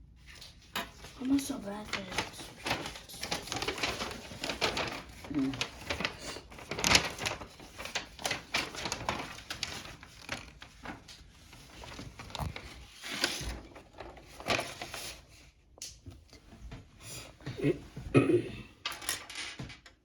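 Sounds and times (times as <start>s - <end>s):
packaging rustling: 0.9s - 15.3s.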